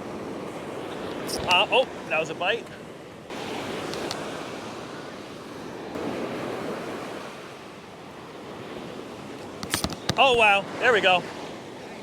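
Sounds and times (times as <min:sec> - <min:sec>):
waves breaking on beach: 0:00.0 - 0:12.0.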